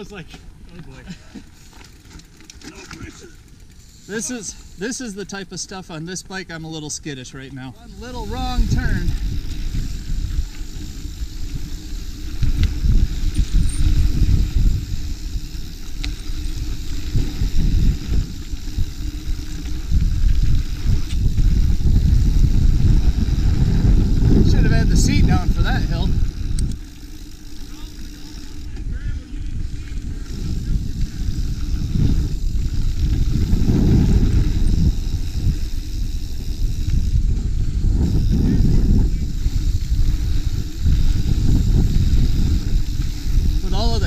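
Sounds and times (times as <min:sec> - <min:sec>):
bike tyres rumbling over dirt: 0:00.0 - 0:06.3, 0:07.7 - 0:44.0
wind buffeting microphone: 0:07.8 - 0:44.0.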